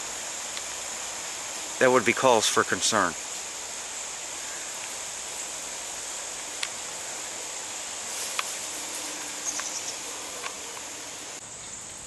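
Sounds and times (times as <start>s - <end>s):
faint hiss: 0.0s - 12.0s
high-pitched insect buzz: 0.0s - 12.0s
faint clicks: 8.2s - 11.0s.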